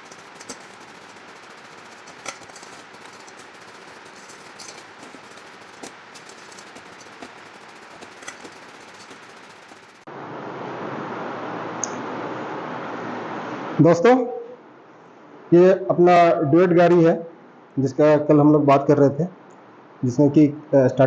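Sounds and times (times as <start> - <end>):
metal parts clicking and tapping: 0.0 - 10.0
steady hiss: 0.0 - 10.1.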